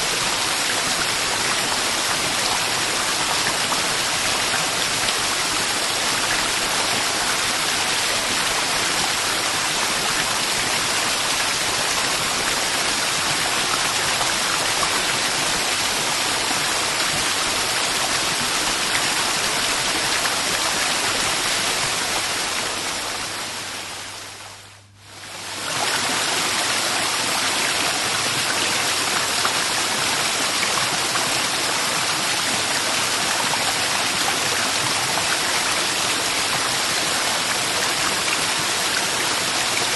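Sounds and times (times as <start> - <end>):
waterfall rushing: 0.0 - 23.9.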